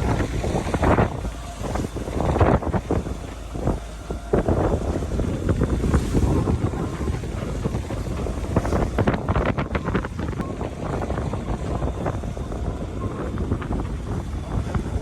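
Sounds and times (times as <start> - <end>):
water rushing: 0.0 - 15.0
wind buffeting microphone: 0.0 - 15.0.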